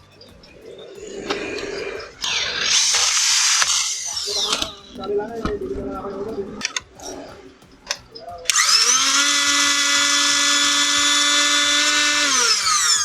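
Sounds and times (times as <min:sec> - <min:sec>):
mixer grinder motor whining: 0:01.1 - 0:04.9, 0:08.5 - 0:13.0.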